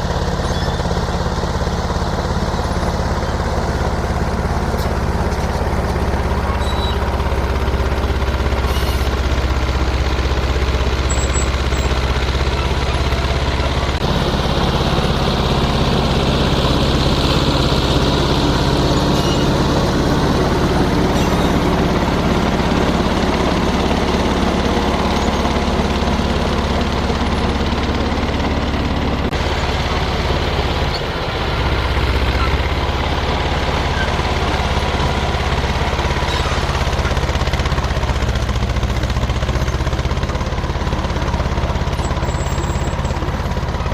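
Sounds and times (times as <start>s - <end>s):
bulldozer engine running: 0.0s - 43.9s.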